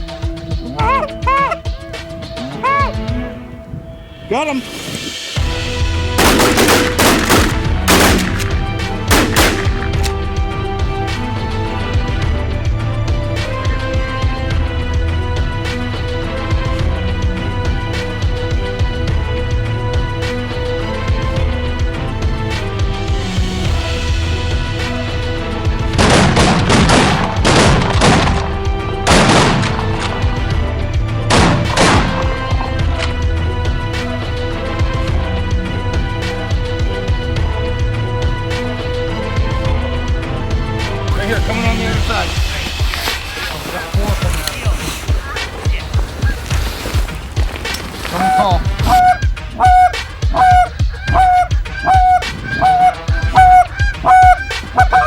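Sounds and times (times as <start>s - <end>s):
background music with bass: 0.0s - 55.0s
shotgun blasts: 6.2s - 10.0s, 26.0s - 28.5s, 29.1s - 29.8s, 31.3s - 32.3s.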